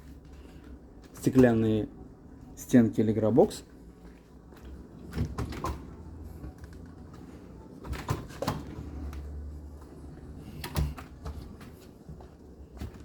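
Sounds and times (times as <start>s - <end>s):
drawers knocking and clicking shut: 5.0s - 6.0s, 7.8s - 9.0s.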